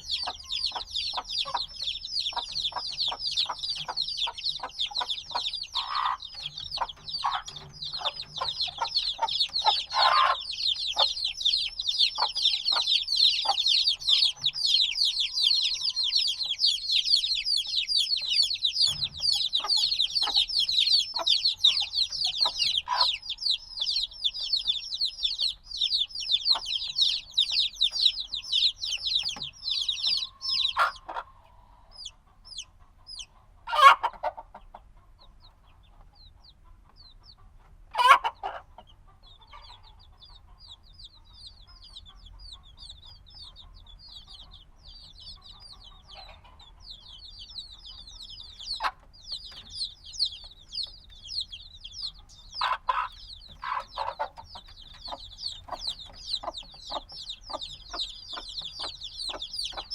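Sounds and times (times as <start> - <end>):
chicks peeping: 0.0 - 59.9.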